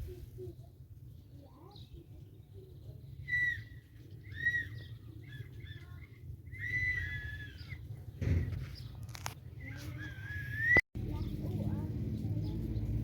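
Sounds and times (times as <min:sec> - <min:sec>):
animal high-pitched calls: 0:03.2 - 0:07.8.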